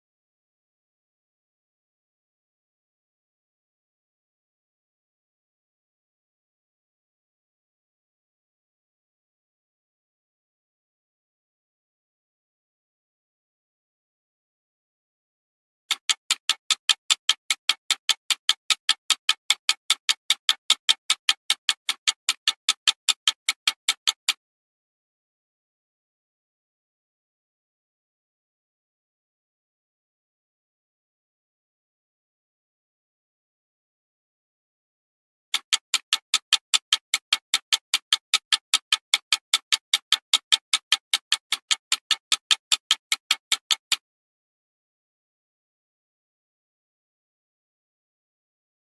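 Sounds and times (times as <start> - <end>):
fast sharp ticking: 15.9 - 24.4, 35.6 - 44.0.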